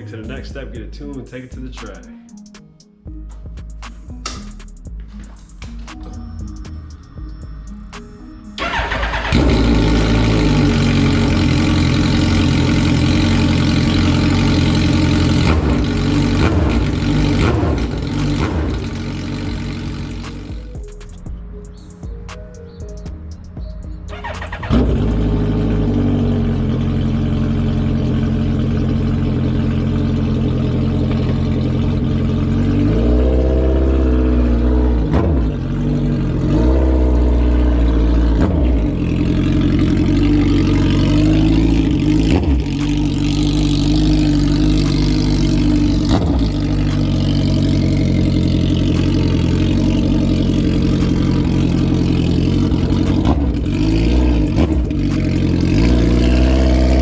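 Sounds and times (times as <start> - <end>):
motorcycle engine revving: 8.6 - 20.8, 24.0 - 57.0.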